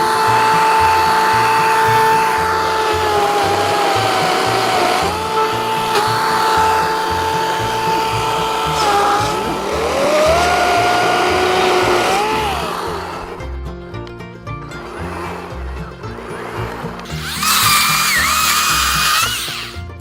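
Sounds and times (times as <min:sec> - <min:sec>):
electric chainsaw whining: 0:00.0 - 0:13.4, 0:14.7 - 0:20.0.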